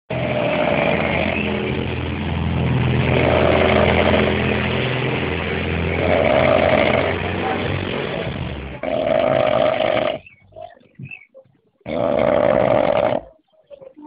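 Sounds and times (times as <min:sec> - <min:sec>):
loud snoring: 0:00.1 - 0:02.0, 0:02.8 - 0:10.2, 0:11.9 - 0:13.3.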